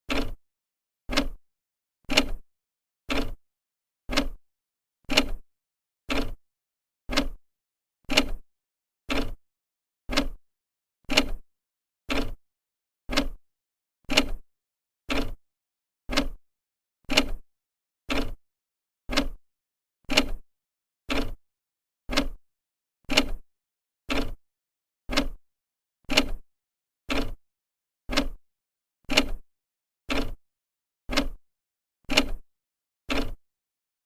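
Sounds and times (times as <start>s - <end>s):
clock ticking: 0.1s - 0.4s, 1.1s - 1.4s, 4.1s - 4.4s, 7.1s - 7.4s, 10.1s - 10.4s, 13.1s - 13.4s, 16.1s - 16.4s, 19.1s - 19.4s, 22.1s - 22.4s, 25.1s - 25.4s, 28.1s - 28.4s, 30.1s - 30.4s, 31.1s - 31.4s, 33.1s - 33.4s.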